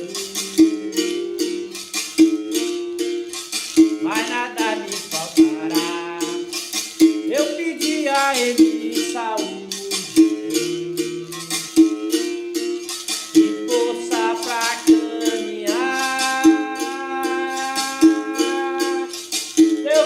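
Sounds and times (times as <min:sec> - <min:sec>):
berimbau string ringing: 0:00.0 - 0:20.0
shaker rattle: 0:00.0 - 0:20.0
person singing a long note: 0:13.6 - 0:19.2.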